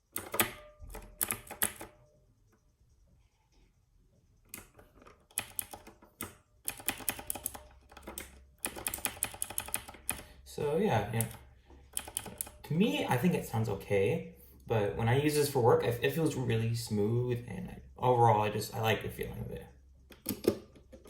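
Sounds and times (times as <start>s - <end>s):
mechanical keyboard typing: 0.0s - 2.0s, 4.5s - 10.3s, 10.9s - 12.6s.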